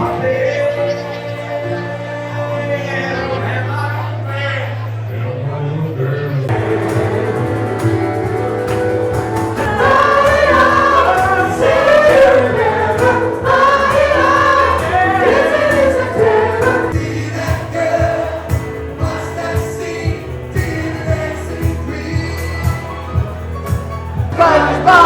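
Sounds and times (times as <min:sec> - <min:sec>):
live bar music: 0:00.0 - 0:04.2, 0:06.5 - 0:25.0
crowd singing along: 0:00.0 - 0:23.3, 0:24.1 - 0:25.0
sharp rhythmic beats: 0:06.5 - 0:25.0.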